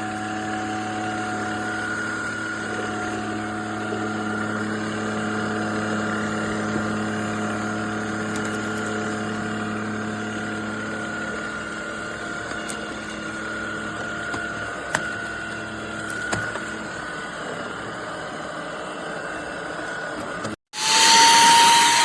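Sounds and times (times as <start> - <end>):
vacuum cleaner motor hum: 0.0 - 22.0.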